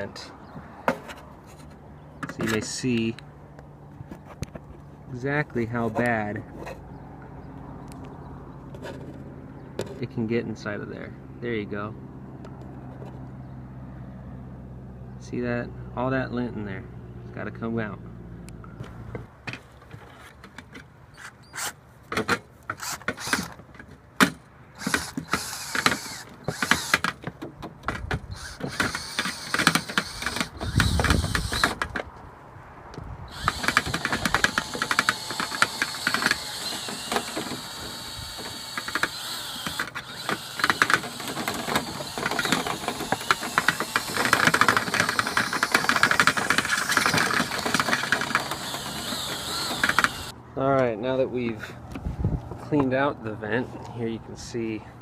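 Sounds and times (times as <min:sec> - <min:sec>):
power drill whine: 0:24.8 - 0:27.0, 0:28.3 - 0:31.8, 0:33.3 - 0:50.3.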